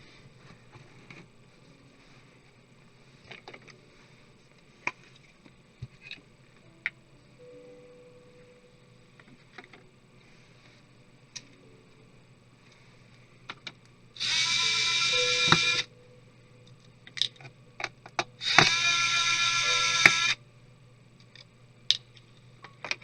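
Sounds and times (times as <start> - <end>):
electric screwdriver whining: 14.2 - 15.9, 18.4 - 20.4.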